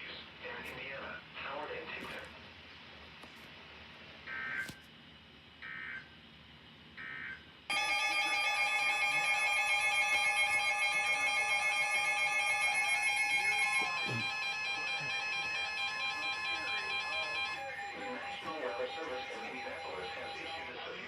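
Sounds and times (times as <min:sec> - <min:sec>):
electronic data bursts: 0:07.7 - 0:21.0
two-tone attention signal: 0:07.7 - 0:21.0.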